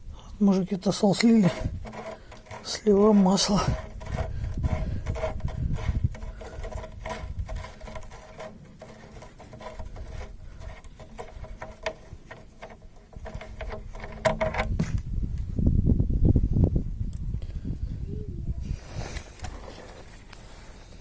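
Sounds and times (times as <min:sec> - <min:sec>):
oil draining and pattering: 0:01.1 - 0:14.7
scattered clicks and knocks: 0:01.2 - 0:15.0.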